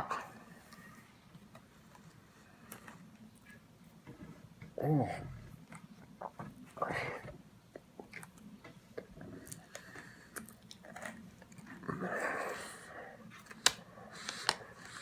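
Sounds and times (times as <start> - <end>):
chewing and crunching pretzels: 7.8 - 12.8.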